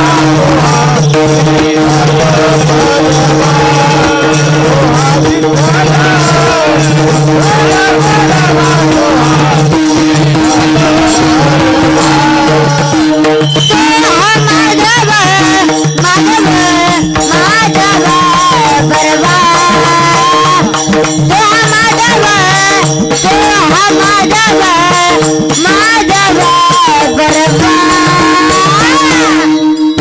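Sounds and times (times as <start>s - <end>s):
jingling percussion: 0.0s - 30.0s
person singing ornamented melody: 0.0s - 30.0s.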